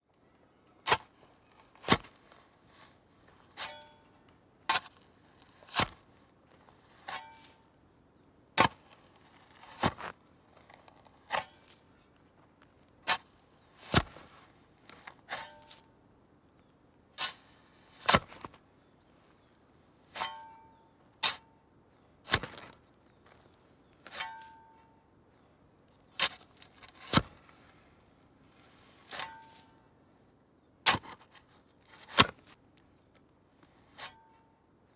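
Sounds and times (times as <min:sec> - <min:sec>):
shovel digging into ground: 0:00.8 - 0:02.9, 0:03.5 - 0:04.1, 0:04.7 - 0:06.0, 0:07.0 - 0:07.8, 0:08.6 - 0:11.9, 0:13.0 - 0:14.3, 0:14.9 - 0:15.9, 0:17.2 - 0:18.6, 0:20.2 - 0:20.6, 0:21.2 - 0:21.5, 0:22.3 - 0:22.8, 0:24.0 - 0:24.7, 0:26.1 - 0:27.5, 0:29.0 - 0:29.8, 0:30.9 - 0:32.6, 0:33.8 - 0:34.4
metallic ring of shovel blade: 0:03.6 - 0:04.2, 0:07.1 - 0:07.8, 0:15.3 - 0:15.9, 0:20.2 - 0:21.5, 0:24.1 - 0:25.0, 0:29.1 - 0:29.8, 0:34.0 - 0:34.4.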